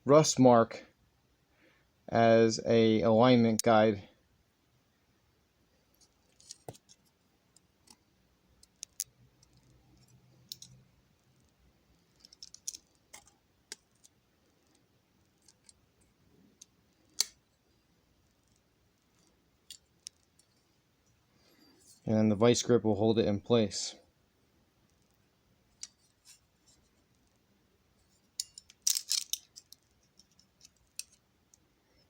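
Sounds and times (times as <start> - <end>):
small metal parts clicking: 6.0 - 8.0, 8.6 - 10.8, 11.4 - 15.8, 16.6 - 17.4, 18.2 - 20.6, 28.1 - 32.0.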